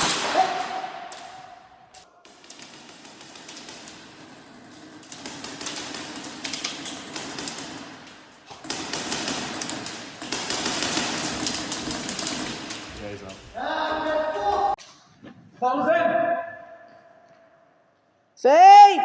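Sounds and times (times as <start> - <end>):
airsoft guns firing: 0.0 - 13.4.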